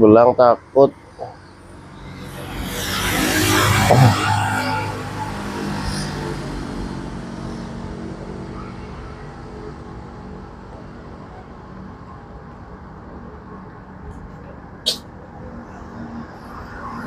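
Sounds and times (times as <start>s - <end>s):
vehicle engine passing by: 2.1s - 8.6s.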